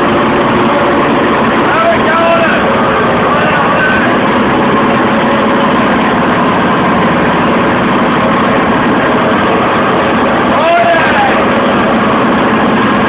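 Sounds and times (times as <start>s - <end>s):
bulldozer diesel engine rattling: 0.0s - 13.0s.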